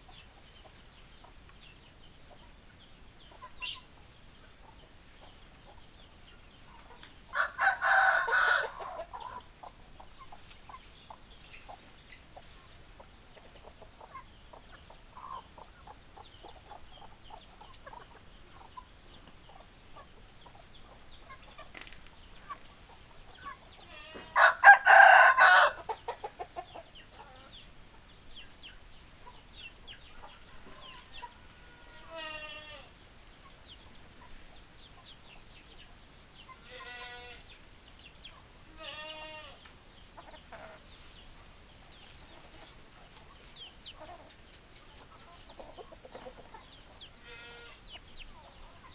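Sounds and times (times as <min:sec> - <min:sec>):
hens clucking softly: 0:03.2 - 0:28.1, 0:38.3 - 0:41.2, 0:42.0 - 0:48.9
rooster crowing: 0:07.3 - 0:09.0, 0:24.1 - 0:25.9.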